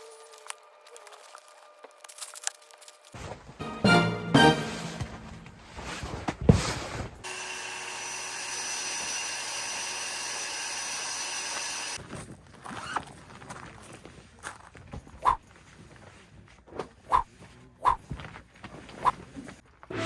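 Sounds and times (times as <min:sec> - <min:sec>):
small electric motor whirring: 0:07.3 - 0:12.0.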